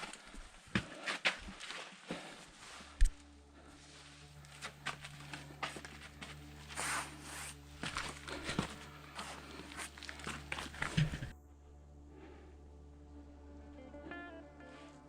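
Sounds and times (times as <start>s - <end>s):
footsteps on sand and stone: 0.0s - 3.1s, 4.4s - 11.4s
low hum: 2.8s - 15.0s
scrape: 6.6s - 11.3s.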